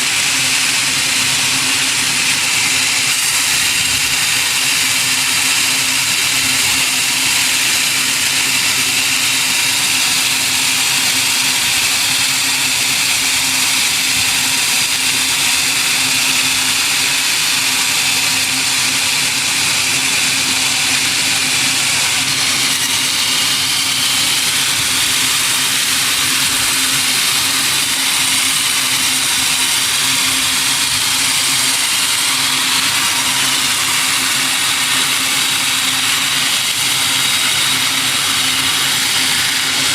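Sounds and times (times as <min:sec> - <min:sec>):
sawmill machinery whirring: 0:00.0 - 0:39.9
low machine hum: 0:17.8 - 0:39.9.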